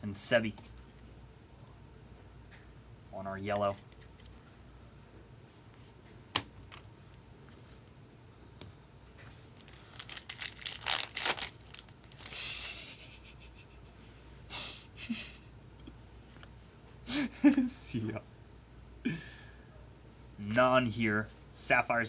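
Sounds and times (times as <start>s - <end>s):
wrapper crinkling and tearing: 9.5s - 12.5s.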